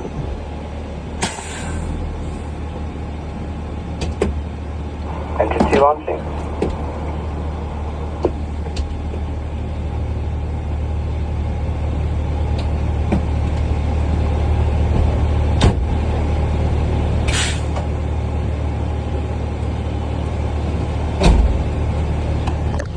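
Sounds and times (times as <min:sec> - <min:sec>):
diesel engine idling: 0:00.0 - 0:22.9
air brakes hissing: 0:01.2 - 0:02.6, 0:17.3 - 0:17.9.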